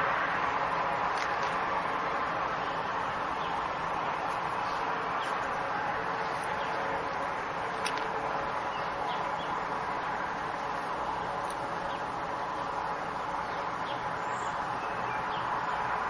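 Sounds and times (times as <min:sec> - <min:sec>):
outdoor background hiss: 0:00.0 - 0:16.0.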